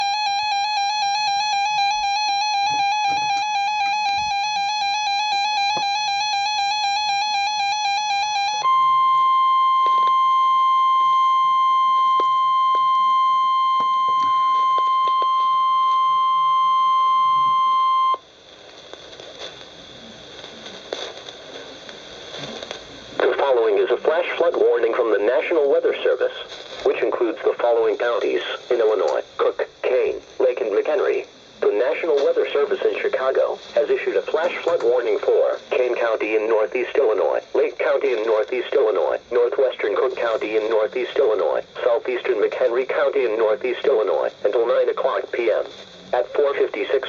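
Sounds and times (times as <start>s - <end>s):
warbling electronic alarm: 0.0s - 18.2s
steady alarm tone: 0.0s - 18.3s
radio hiss and crackle: 13.8s - 47.0s.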